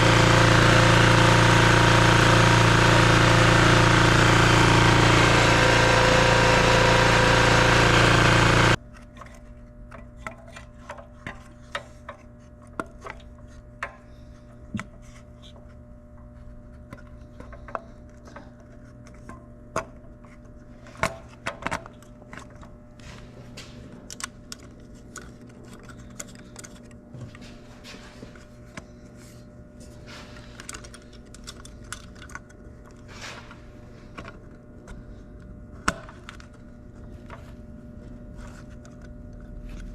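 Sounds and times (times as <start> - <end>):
small generator engine running: 0.0 - 8.8.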